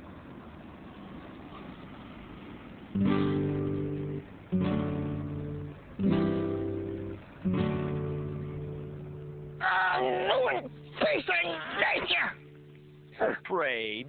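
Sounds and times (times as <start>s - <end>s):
acoustic guitar chords ringing: 2.9s - 14.0s.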